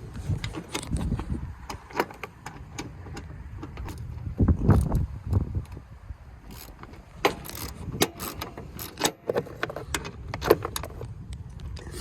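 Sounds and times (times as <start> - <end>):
low steady rumble: 0.0 - 12.0
metallic clinks and rattles of tools: 6.4 - 11.1.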